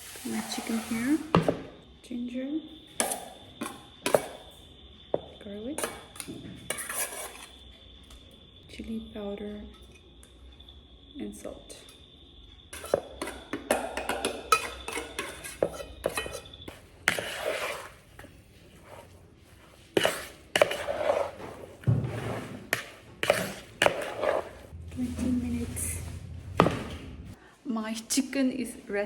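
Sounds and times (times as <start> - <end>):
spoon and dishes clinking: 12.8 - 17.4.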